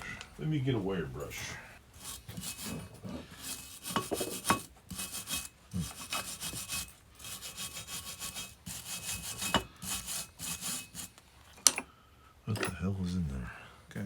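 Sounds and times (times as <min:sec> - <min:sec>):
wire brush scraping metal: 0:01.9 - 0:11.2.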